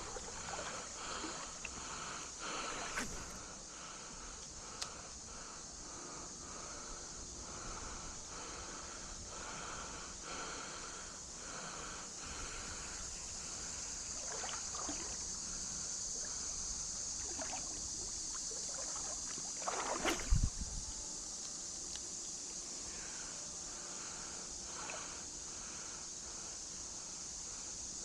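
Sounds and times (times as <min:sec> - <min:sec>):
water splashing from wading: 0:00.0 - 0:01.6, 0:14.1 - 0:15.4, 0:17.2 - 0:20.5
creek flowing: 0:12.8 - 0:20.4.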